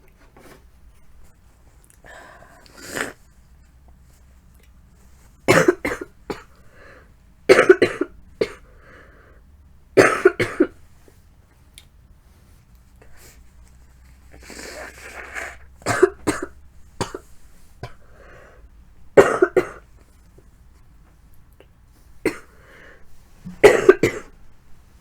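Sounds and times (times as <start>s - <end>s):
person coughing: 5.5s - 6.6s, 7.5s - 8.6s, 10.0s - 10.7s, 15.8s - 18.0s, 19.2s - 19.8s, 22.3s - 22.5s, 23.5s - 24.3s.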